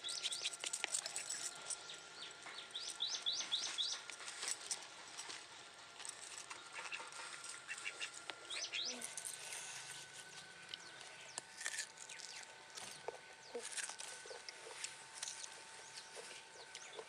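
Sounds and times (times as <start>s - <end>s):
birds chirping: 0.0s - 17.0s.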